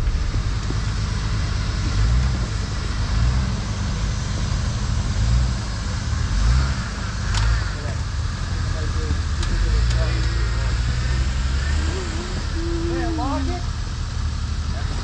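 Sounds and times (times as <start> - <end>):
engine low rumble: 0.0 - 15.0.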